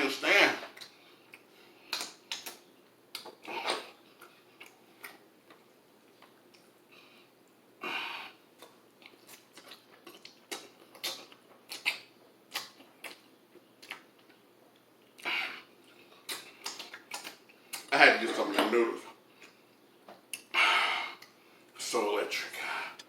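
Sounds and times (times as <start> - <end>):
chewing and lip smacks: 0.7 - 6.8, 8.6 - 17.9, 19.3 - 20.6.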